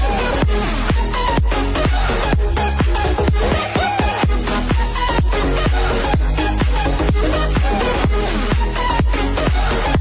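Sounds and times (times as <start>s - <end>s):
electronic dance music: 0.0s - 10.0s
kick drum thumping: 5.2s - 10.0s.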